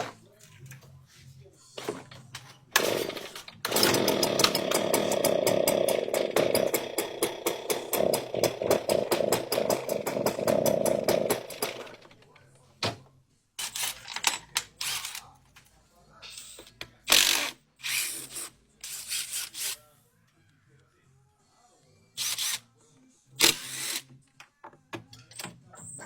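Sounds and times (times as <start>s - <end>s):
two-stroke sprayer engine: 3.7s - 12.0s.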